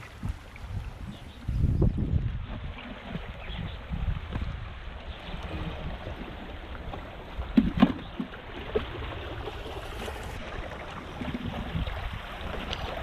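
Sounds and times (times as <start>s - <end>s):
seawater washing among rocks: 0.0s - 13.0s
sharp knocks or splashes: 7.4s - 9.2s.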